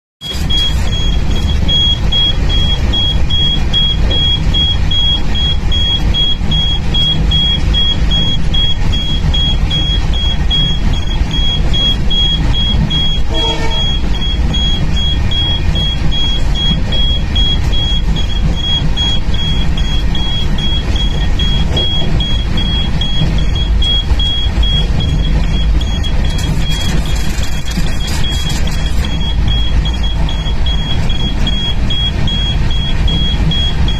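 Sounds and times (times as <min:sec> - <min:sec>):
high rapidly pulsing tone: 0:00.2 - 0:33.9
vehicle rumble: 0:00.2 - 0:33.9
short horn-like tone: 0:13.2 - 0:14.1.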